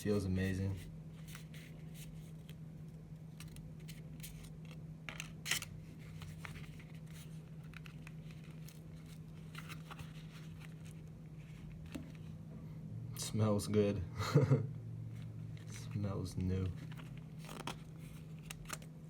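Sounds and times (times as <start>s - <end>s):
steady low hum: 0.0s - 19.0s
wallet rustling and scraping: 3.4s - 12.4s, 15.2s - 18.9s.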